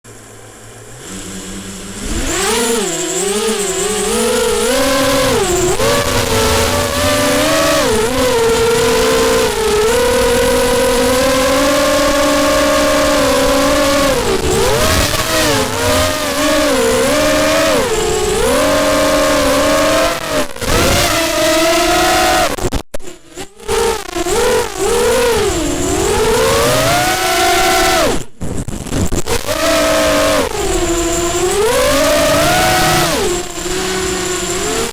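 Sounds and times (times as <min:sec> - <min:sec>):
quadcopter motors buzzing whine: 0:00.1 - 0:34.9.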